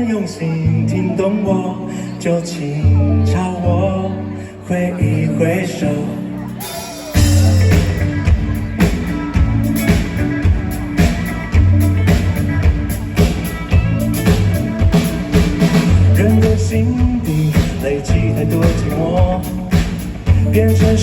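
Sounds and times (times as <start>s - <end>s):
live rock band playing: 5.4s - 21.0s.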